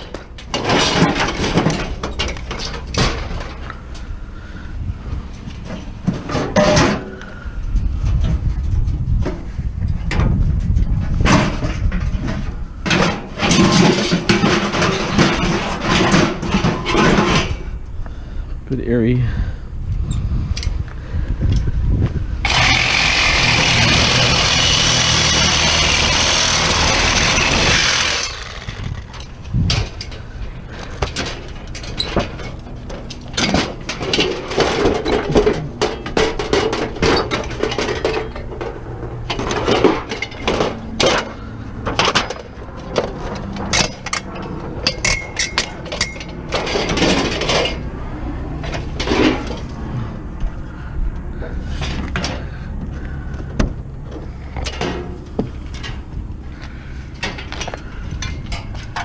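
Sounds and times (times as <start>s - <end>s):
scrap metal clanking: 0.0s - 4.7s, 5.4s - 7.5s, 11.0s - 17.8s, 22.4s - 53.3s, 54.1s - 59.0s
power tool cutting metal: 22.4s - 29.1s
low engine hum: 40.2s - 59.0s.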